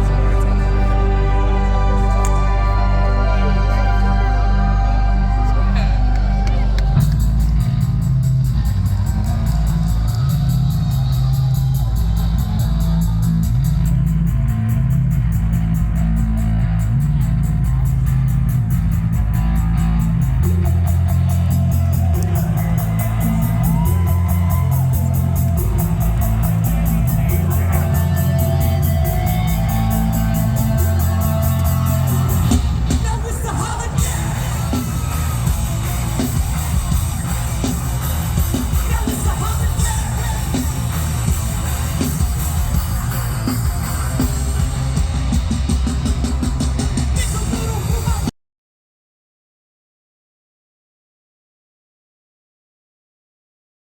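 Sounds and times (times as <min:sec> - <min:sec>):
heavy rock band playing live: 0:00.0 - 0:48.3
shouted vocals: 0:21.6 - 0:26.1.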